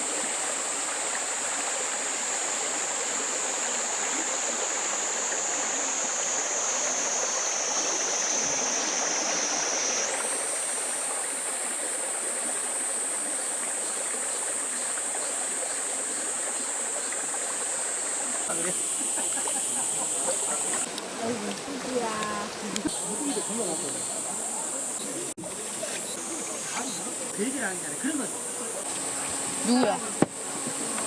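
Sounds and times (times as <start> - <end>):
stream rushing over rocks: 0.0 - 31.0.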